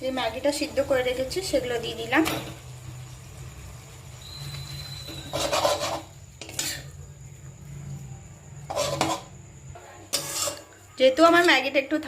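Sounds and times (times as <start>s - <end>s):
utensil scraping a pan: 4.9s - 6.9s, 8.6s - 9.4s, 10.0s - 11.6s
faint low hum: 6.8s - 10.1s.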